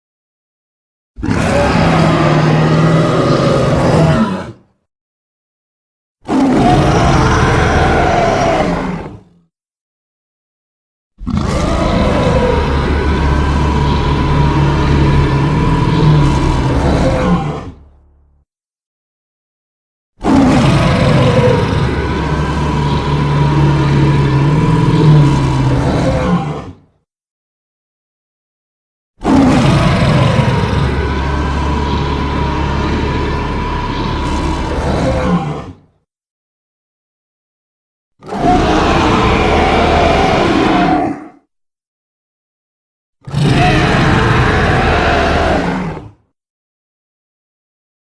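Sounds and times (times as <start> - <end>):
gorilla roar: 1.2 - 4.7, 6.3 - 9.3, 11.2 - 17.9, 20.2 - 26.8, 29.2 - 35.9, 38.2 - 41.5, 43.2 - 46.2.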